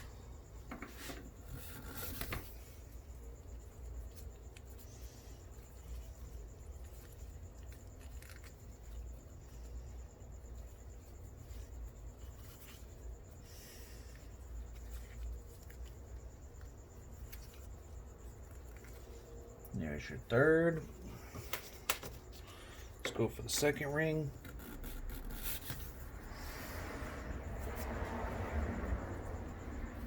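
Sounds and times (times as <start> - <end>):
steady low hum: 0.0 - 30.0
rubbing and light clicks: 0.6 - 13.4, 14.1 - 19.7.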